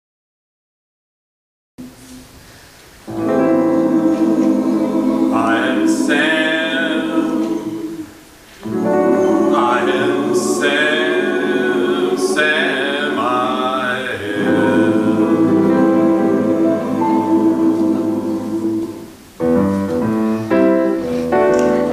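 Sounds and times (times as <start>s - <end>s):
men singing in harmony: 3.1s - 19.3s.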